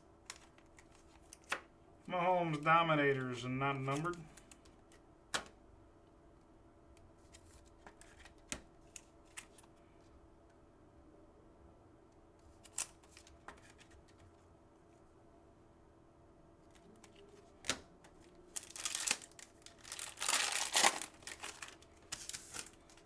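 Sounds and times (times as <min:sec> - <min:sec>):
low room hum: 0:00.0 - 0:23.0
cards clicking and snapping: 0:03.9 - 0:05.6.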